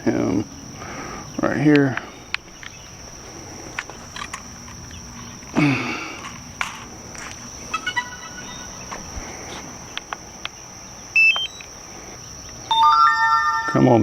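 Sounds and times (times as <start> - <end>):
high-pitched insect buzz: 7.1 - 10.0
short electronic beeps: 11.2 - 11.6, 12.7 - 14.0.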